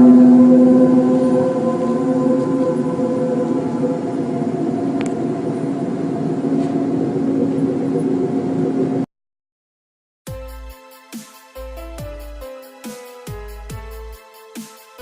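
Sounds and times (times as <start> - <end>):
loud droning hum: 0.0 - 9.0
electronic music: 10.3 - 15.0.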